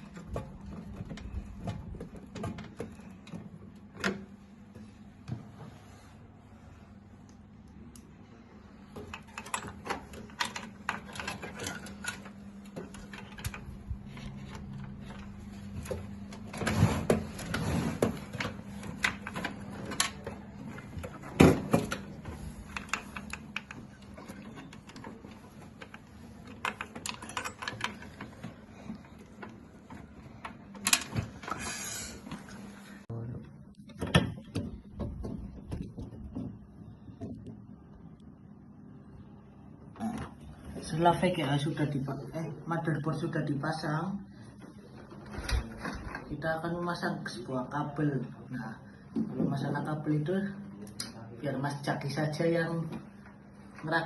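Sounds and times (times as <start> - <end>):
computer parts clicking and knocking: 8.9 - 15.4, 18.0 - 31.5, 33.7 - 37.6.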